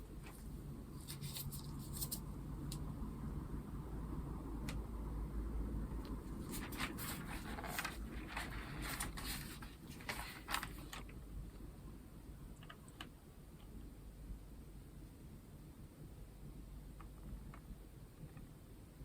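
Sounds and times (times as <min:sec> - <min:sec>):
packaging crinkling and scraping: 0:00.2 - 0:02.2, 0:06.3 - 0:11.1.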